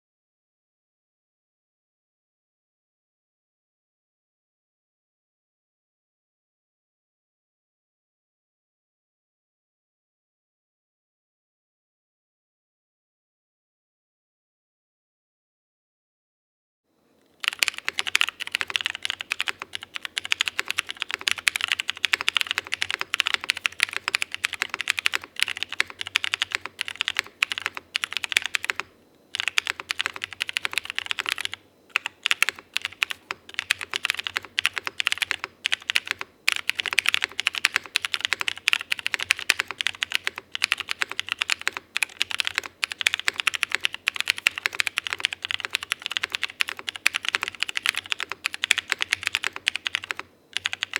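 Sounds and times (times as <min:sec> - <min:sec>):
mechanical keyboard typing clacks: 0:17.4 - 0:50.9.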